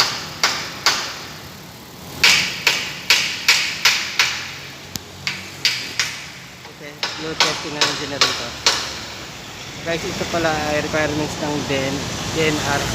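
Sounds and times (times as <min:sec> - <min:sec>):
sharp ringing knocks: 0:00.0 - 0:01.4, 0:02.2 - 0:09.2.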